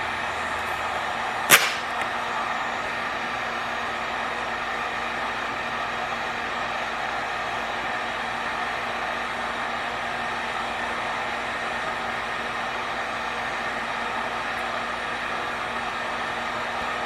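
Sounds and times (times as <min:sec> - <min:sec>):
heat gun blowing hot air: 0:01.5 - 0:02.0.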